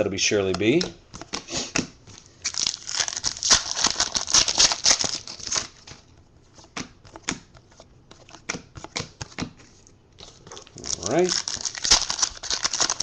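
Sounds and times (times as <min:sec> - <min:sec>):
foil wrapper rustling and tearing: 0:02.4 - 0:05.9, 0:10.5 - 0:13.0.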